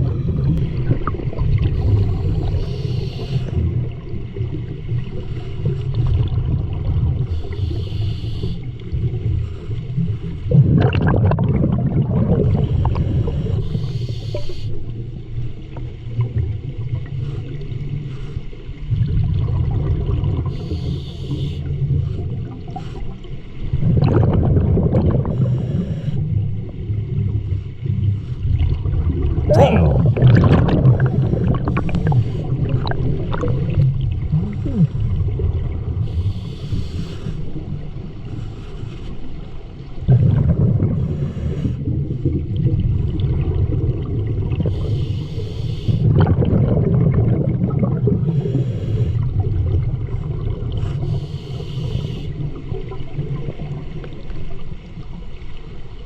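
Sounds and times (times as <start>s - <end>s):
bubbles gurgling: 0.0s - 7.4s, 10.4s - 14.3s, 18.9s - 20.6s, 23.7s - 36.5s, 39.9s - 45.2s, 46.0s - 51.2s
diver breathing through regulator: 1.6s - 3.9s, 7.2s - 10.4s, 12.4s - 15.0s, 20.4s - 23.5s, 25.2s - 26.6s, 29.5s - 35.2s, 36.0s - 39.6s, 40.8s - 42.3s, 44.6s - 46.2s, 48.2s - 49.5s, 50.7s - 52.6s.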